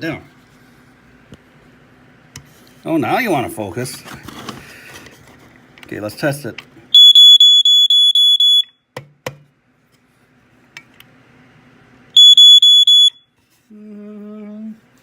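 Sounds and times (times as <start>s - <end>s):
low steady hum: 0.0s - 15.0s
smoke alarm pulsing tone: 6.9s - 8.8s, 12.2s - 13.3s.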